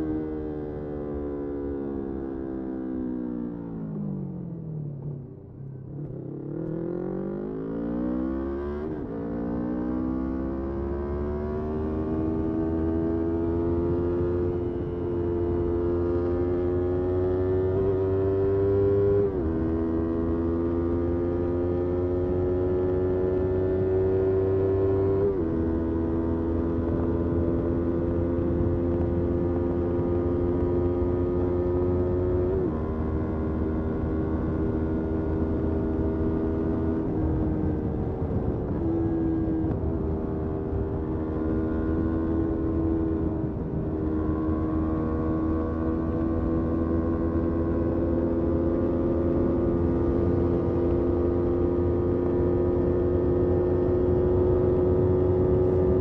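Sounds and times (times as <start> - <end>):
motorcycle engine accelerating: 0.0 - 56.0.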